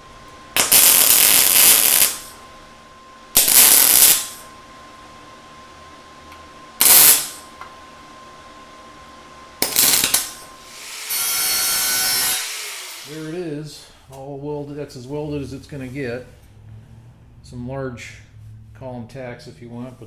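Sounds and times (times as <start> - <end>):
welding arc crackling: 0.6 - 2.4, 3.4 - 4.5, 6.8 - 7.4, 9.6 - 10.5.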